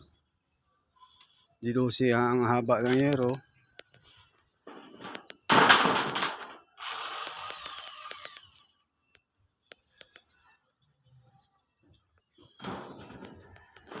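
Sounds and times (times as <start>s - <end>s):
metal roofing sheet rattling: 4.7s - 6.8s, 12.6s - 14.0s.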